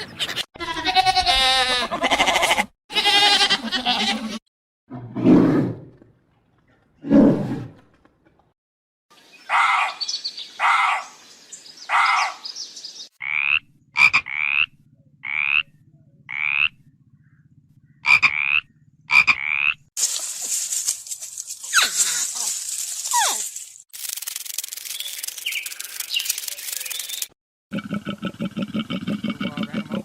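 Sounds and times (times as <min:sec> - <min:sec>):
frogs croaking: 0:13.2 - 0:19.8
frog chirp-like calls: 0:13.2 - 0:19.9.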